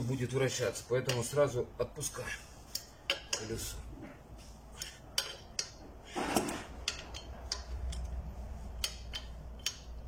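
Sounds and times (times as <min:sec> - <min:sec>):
wrench clicking on wheel bolts: 0:04.8 - 0:05.8, 0:06.8 - 0:10.0.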